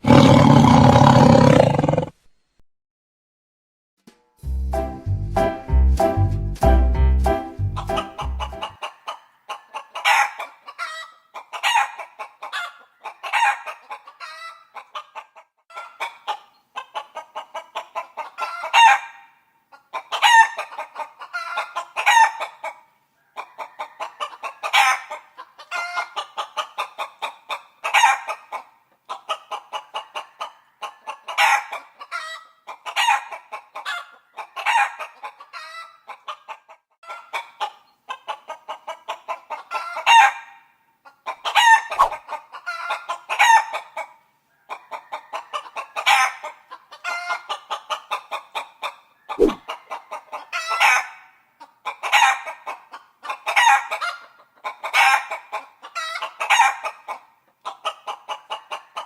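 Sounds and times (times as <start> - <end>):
chickens clucking: 4.7 - 19.1, 19.7 - 59.0
sharp chicken call: 7.3 - 8.8, 41.6 - 42.2, 49.4 - 49.6.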